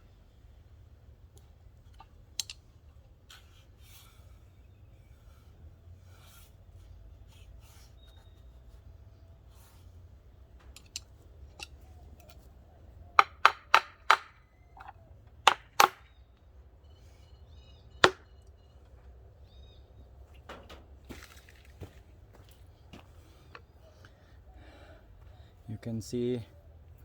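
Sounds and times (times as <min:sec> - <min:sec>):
sharp knocks on wood: 0:13.2 - 0:14.9, 0:15.5 - 0:16.0, 0:18.0 - 0:18.2.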